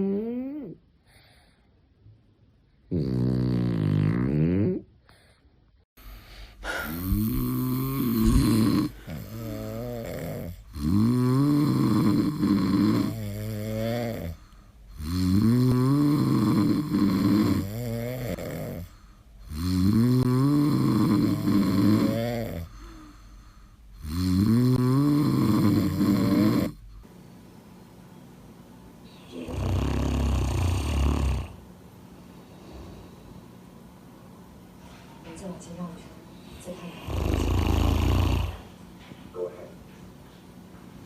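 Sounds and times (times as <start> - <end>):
dog snoring loudly: 2.9 - 4.9, 6.6 - 26.8, 29.1 - 31.6, 36.8 - 38.7.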